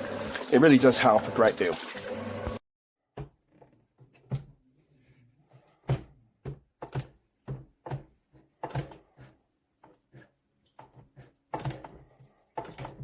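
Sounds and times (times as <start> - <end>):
dull thumps: 5.7 - 9.2.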